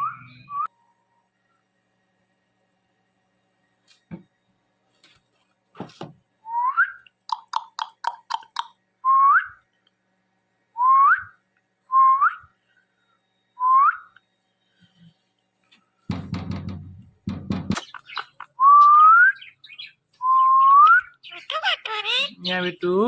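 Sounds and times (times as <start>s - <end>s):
parrot whistling: 0.0s - 0.7s, 17.7s - 22.4s
soft knocks: 16.1s - 18.0s.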